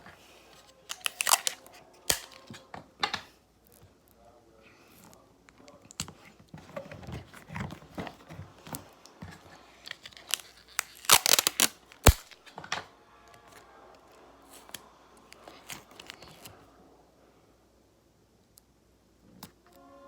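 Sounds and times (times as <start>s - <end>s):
paper tearing and crinkling: 0.8s - 2.4s, 9.8s - 12.4s.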